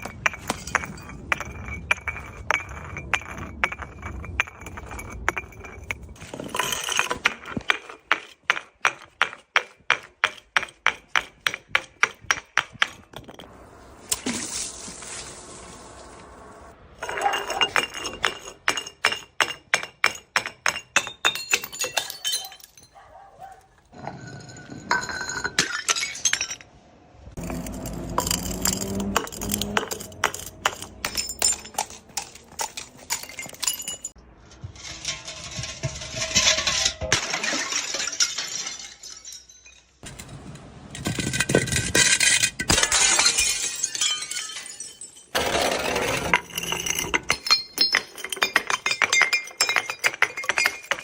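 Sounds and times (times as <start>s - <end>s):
glass bottle tumbling down stairs: 0.0s - 13.5s, 17.0s - 22.9s, 23.9s - 26.6s, 27.4s - 40.2s, 41.0s - 51.0s
glass shards tinkling: 17.0s - 23.0s, 27.4s - 34.2s, 36.3s - 40.1s, 41.1s - 45.5s, 46.1s - 51.0s.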